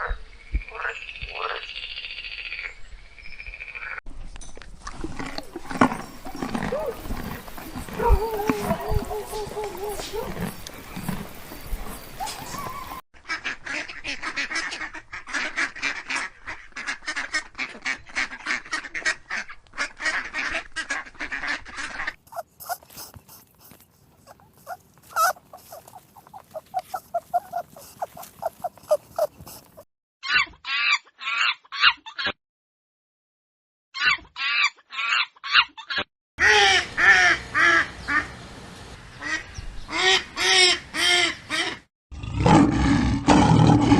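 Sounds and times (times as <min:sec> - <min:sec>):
chickens clucking: 0:05.8 - 0:13.0, 0:22.3 - 0:29.8
ducks quacking: 0:06.4 - 0:29.8.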